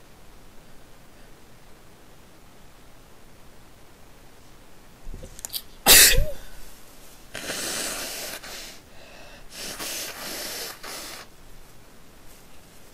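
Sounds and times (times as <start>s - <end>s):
person sneezing: 5.9s - 6.6s, 7.4s - 8.8s, 9.5s - 11.3s
noisy nose blowing: 7.3s - 11.3s.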